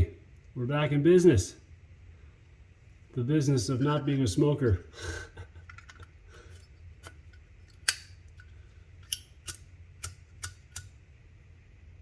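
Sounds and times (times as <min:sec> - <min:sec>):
metal lighter clicks: 0:07.8 - 0:08.2, 0:09.0 - 0:11.0.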